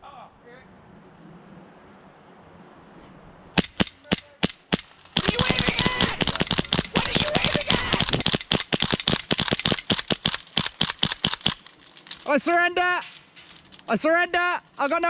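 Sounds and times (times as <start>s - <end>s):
airsoft gun single shots: 3.6s - 12.2s
airsoft gun automatic fire: 3.6s - 13.8s.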